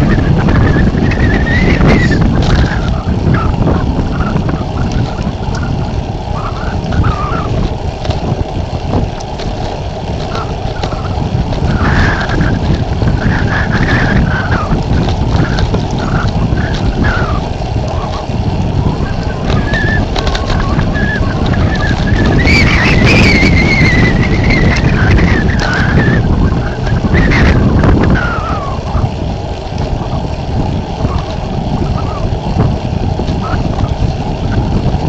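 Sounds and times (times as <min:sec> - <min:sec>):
strong gusting wind: 0:00.0 - 0:35.0
wavering higher wind tones: 0:00.0 - 0:35.0.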